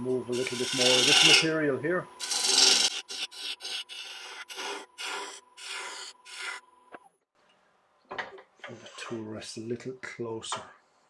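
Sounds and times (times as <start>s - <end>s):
lathe whine: 0.0s - 1.6s, 2.2s - 6.6s
gouge cutting wood on lathe: 0.3s - 1.6s, 2.2s - 6.6s.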